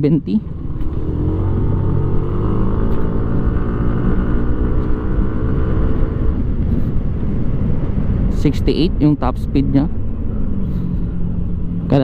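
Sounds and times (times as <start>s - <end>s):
scooter engine at full throttle: 0.5s - 8.4s.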